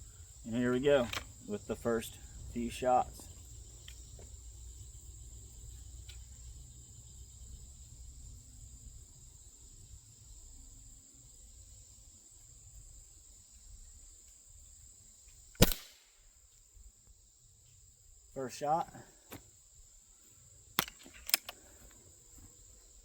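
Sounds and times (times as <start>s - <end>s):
crickets droning: 0.0s - 23.0s
air rifle shot: 15.6s - 16.2s.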